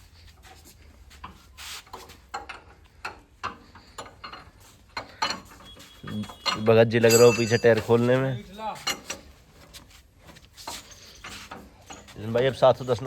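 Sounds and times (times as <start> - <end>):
metal tools clicking and knocking: 2.3 - 9.4, 11.0 - 13.0.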